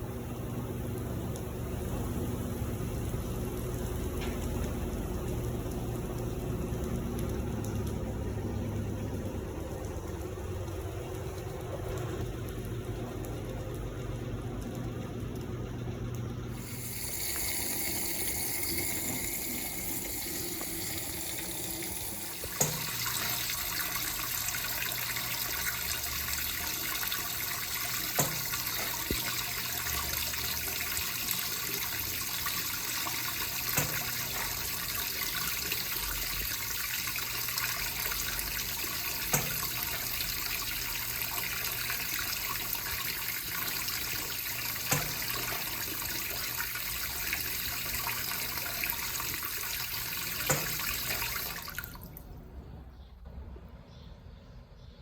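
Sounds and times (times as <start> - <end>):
washing machine filling with water: 0.0 - 52.5.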